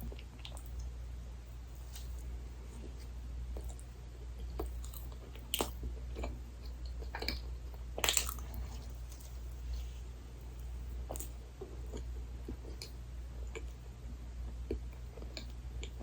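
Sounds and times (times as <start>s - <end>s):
wet chewing: 3.6s - 9.9s
crisp crunching bites: 8.0s - 8.6s.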